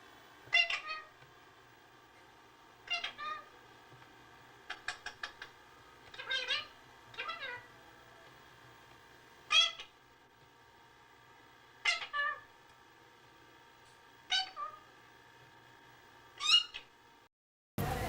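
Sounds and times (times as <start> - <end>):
cat meowing: 0.5 - 1.1, 2.9 - 3.5, 6.2 - 7.7, 11.8 - 12.4, 14.3 - 14.8.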